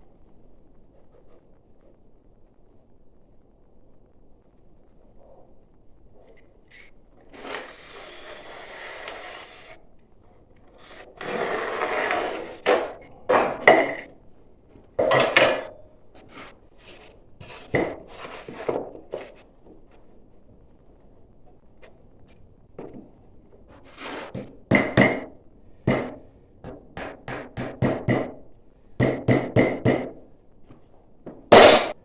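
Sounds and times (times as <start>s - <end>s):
scraping and rubbing of board: 7.4s - 9.8s, 10.7s - 14.1s, 15.0s - 19.4s, 23.7s - 24.5s.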